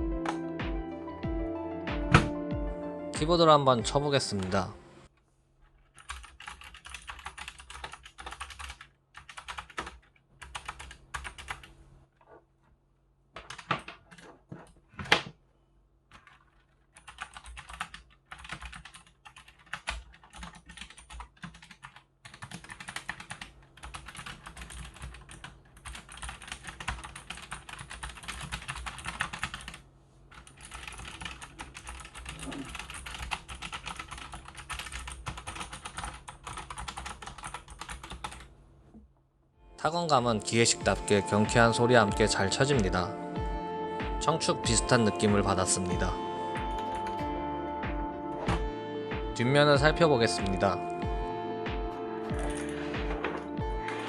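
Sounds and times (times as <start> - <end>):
mechanical keyboard typing: 5.9 - 11.7, 13.4 - 14.3, 16.1 - 38.4, 52.2 - 54.0.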